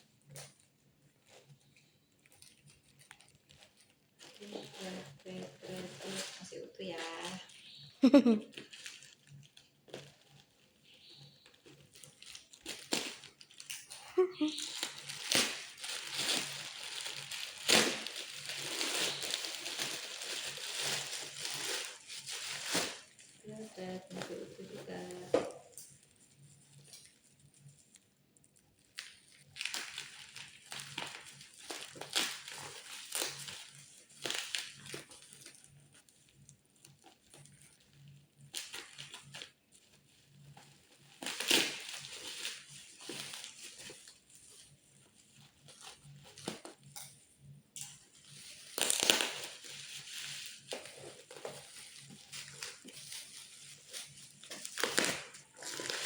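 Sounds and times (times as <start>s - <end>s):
plastic packaging crinkling: 0.0s - 56.0s.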